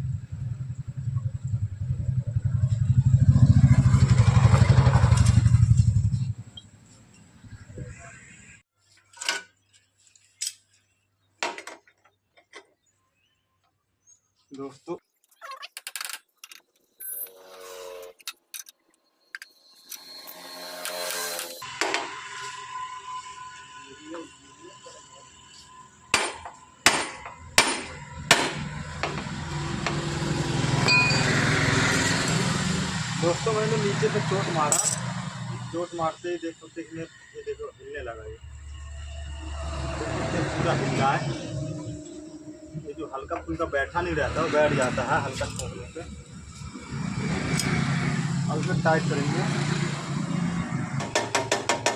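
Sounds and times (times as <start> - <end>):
hammer striking metal: 20.8 - 22.3, 26.1 - 30.2, 51.0 - 51.9
metal tools clinking: 34.7 - 35.1.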